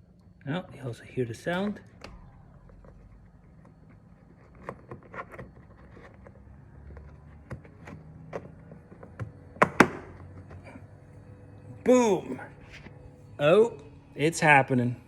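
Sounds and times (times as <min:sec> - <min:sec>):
plastic clicks and knocks: 0:04.4 - 0:10.6.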